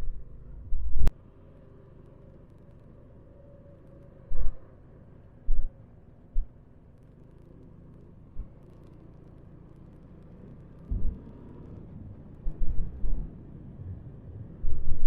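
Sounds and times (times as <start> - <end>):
motorcycle engine rumbling: 0.0 - 15.0
wind thumps on microphone: 10.9 - 11.3, 12.4 - 13.4, 14.6 - 15.0.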